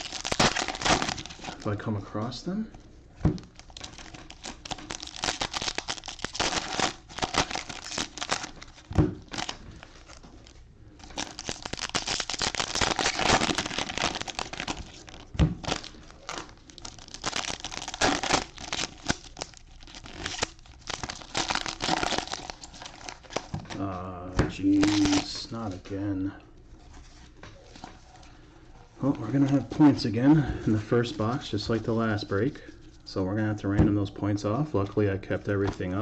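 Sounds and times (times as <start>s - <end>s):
foil wrappers tearing and crinkling: 0.0s - 1.7s, 3.5s - 23.5s, 24.7s - 25.4s.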